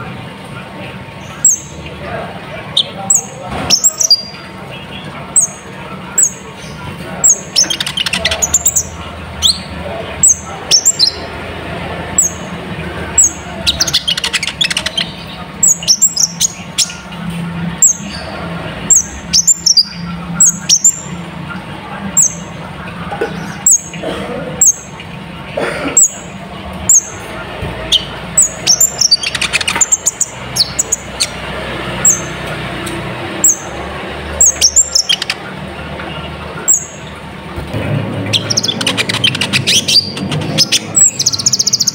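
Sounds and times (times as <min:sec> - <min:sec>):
rapid twittering birdsong: 0:00.0 - 0:41.9
sunbird chirps: 0:27.9 - 0:31.4.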